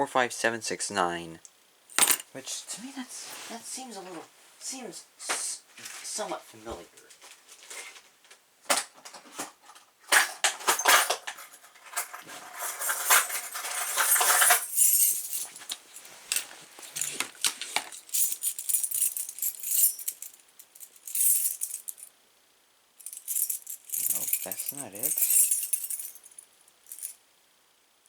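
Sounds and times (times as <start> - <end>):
keys jingling: 10.7 - 22.1, 23.0 - 27.2
dense rustling: 12.2 - 20.3.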